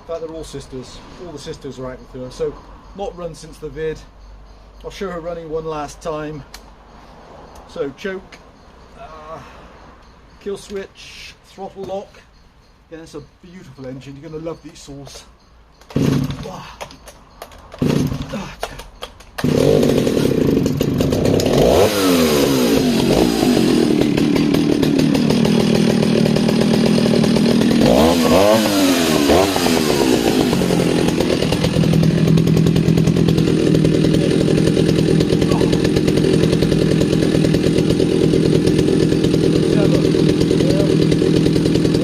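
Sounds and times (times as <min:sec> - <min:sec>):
chainsaw pull-start: 0:15.8 - 0:42.0
chainsaw running and revving: 0:15.9 - 0:16.6, 0:17.8 - 0:18.8, 0:19.4 - 0:42.0.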